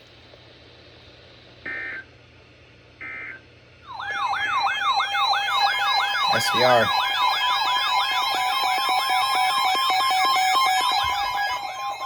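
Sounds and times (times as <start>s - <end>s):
siren-like alert tone: 3.9s - 12.0s.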